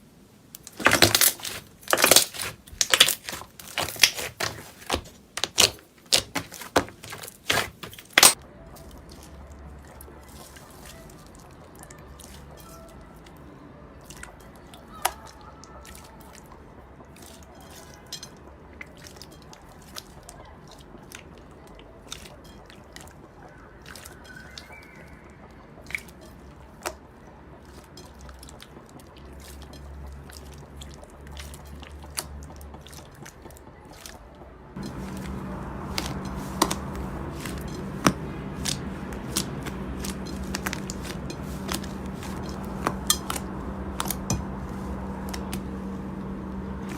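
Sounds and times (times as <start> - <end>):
steady low hum: 34.4 - 46.9.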